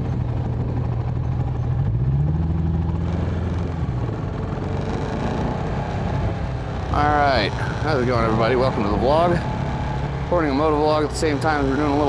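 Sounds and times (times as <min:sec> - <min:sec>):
motorcycle engine idling: 0:00.0 - 0:02.0, 0:06.6 - 0:12.0.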